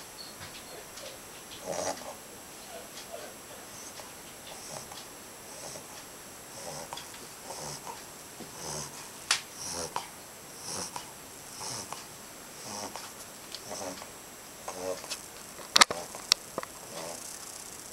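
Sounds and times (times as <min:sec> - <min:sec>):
puppy snoring: 0:00.0 - 0:17.9.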